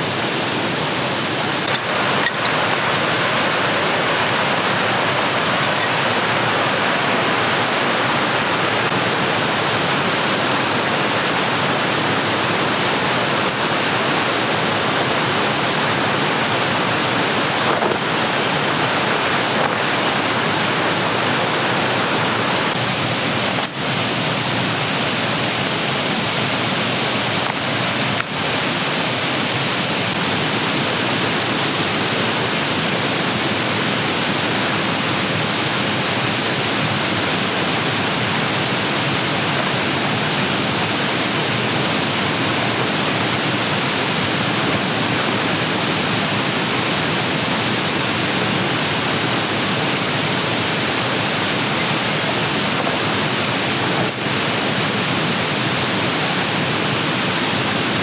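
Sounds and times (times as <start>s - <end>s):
steady rushing noise: 0.0s - 26.0s.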